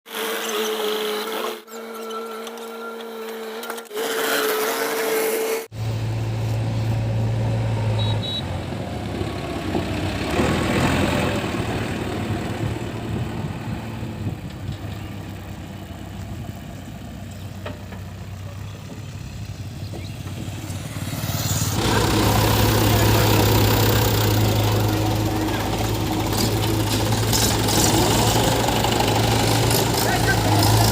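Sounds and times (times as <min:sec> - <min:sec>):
diesel engine humming: 0:05.6 - 0:30.9.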